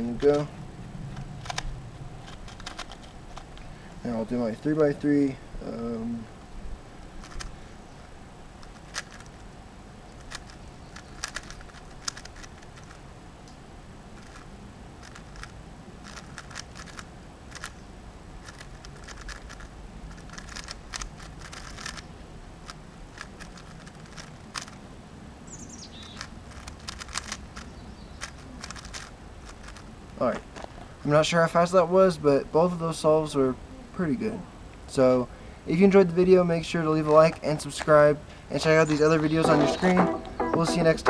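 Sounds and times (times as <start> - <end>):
low background rumble: 0.0 - 21.4
plastic puzzle cube clicking: 1.3 - 3.6, 7.0 - 7.6, 8.6 - 9.4, 10.1 - 13.0, 14.2 - 17.8, 18.4 - 24.8, 26.0 - 29.9
bird chirp: 25.5 - 26.3, 27.6 - 28.4, 38.6 - 41.0.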